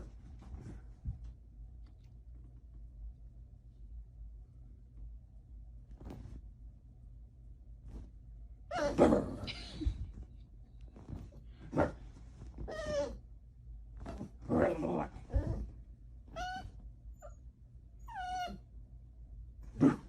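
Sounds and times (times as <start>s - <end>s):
pet animal crying: 16.3s - 16.8s, 18.1s - 18.6s.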